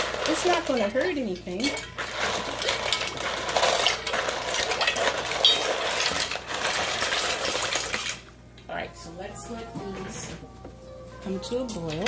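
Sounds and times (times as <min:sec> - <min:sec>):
dry pasta clattering into pot: 0:00.0 - 0:08.2.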